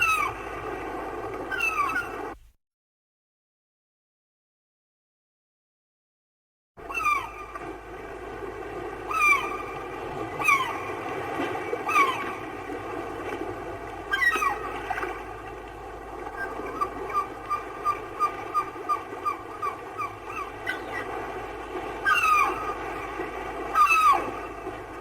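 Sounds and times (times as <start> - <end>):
gull calling: 0.0 - 0.6, 1.4 - 2.4, 6.8 - 7.8, 9.0 - 13.4, 14.0 - 15.4, 16.2 - 25.0.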